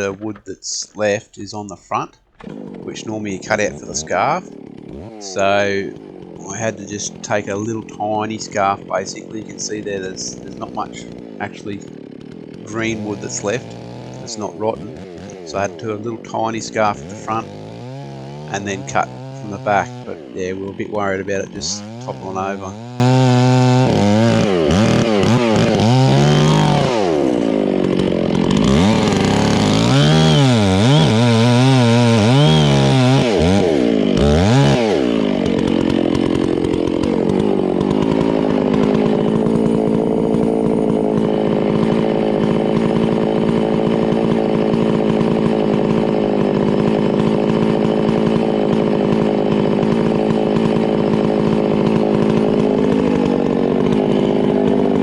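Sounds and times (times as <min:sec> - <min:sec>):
chainsaw revving: 0:00.0 - 0:55.0.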